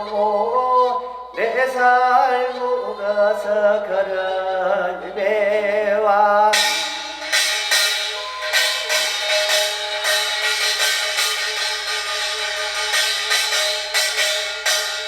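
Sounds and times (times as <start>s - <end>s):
gongs and drums playing: 6.6s - 15.0s.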